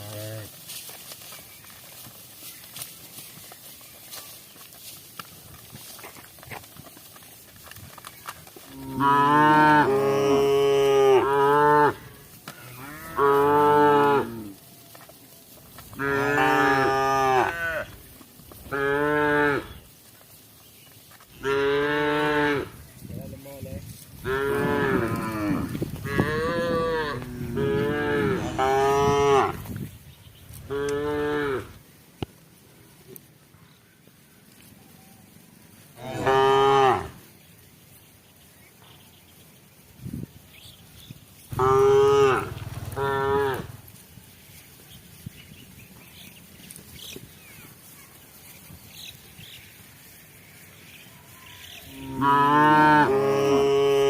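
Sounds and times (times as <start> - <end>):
cattle mooing: 0.0 - 0.5, 8.7 - 14.6, 16.0 - 17.9, 24.2 - 29.6, 30.7 - 31.8, 36.0 - 37.2, 41.5 - 43.8, 51.9 - 54.0.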